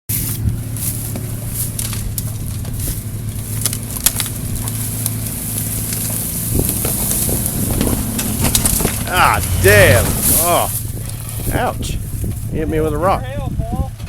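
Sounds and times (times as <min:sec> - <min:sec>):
vehicle engine running at low speed: 0:00.1 - 0:14.0
sharp clicks and knocks: 0:01.1 - 0:09.1.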